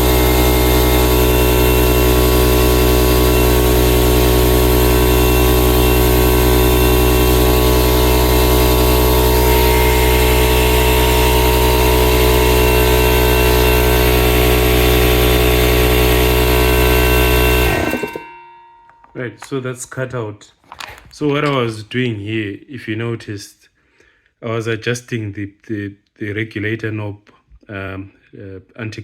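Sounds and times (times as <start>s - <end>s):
air compressor running: 0.0s - 19.1s.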